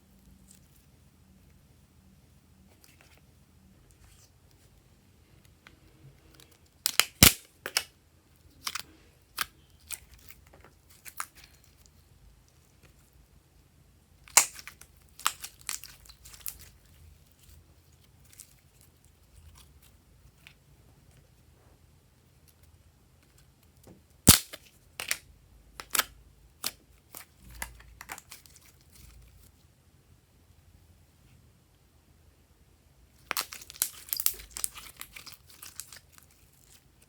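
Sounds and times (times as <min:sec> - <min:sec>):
slime crackling and popping: 0:06.8 - 0:07.9, 0:14.2 - 0:16.8, 0:24.3 - 0:25.2, 0:33.2 - 0:36.8.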